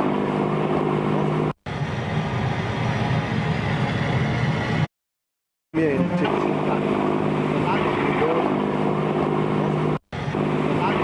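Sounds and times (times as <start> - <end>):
ship's horn blast: 5.8 - 7.0.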